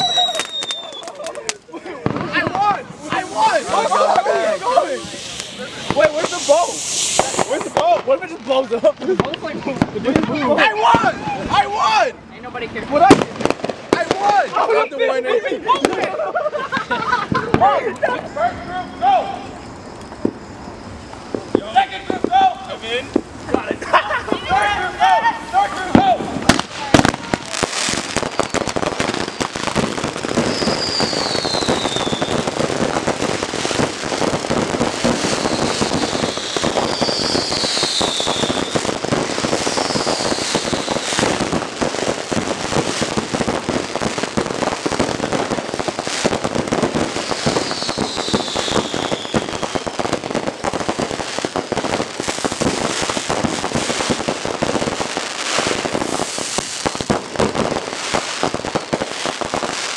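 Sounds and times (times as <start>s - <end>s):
falling firework whistles: 0.0s - 9.3s, 18.8s - 22.3s, 25.4s - 59.9s
fireworks popping and crackling: 0.0s - 11.7s, 12.7s - 14.9s, 15.7s - 16.2s, 21.0s - 24.6s, 25.6s - 59.9s.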